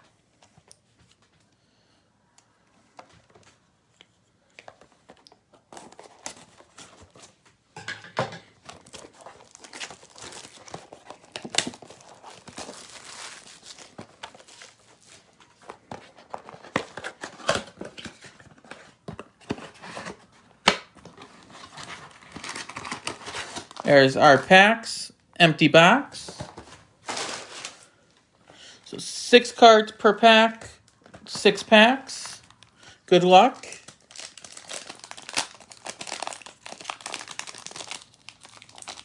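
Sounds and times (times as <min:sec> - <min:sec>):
foil packs crinkling: 0:08.6 - 0:18.0, 0:21.4 - 0:23.9, 0:27.0 - 0:28.0, 0:33.6 - 0:39.0.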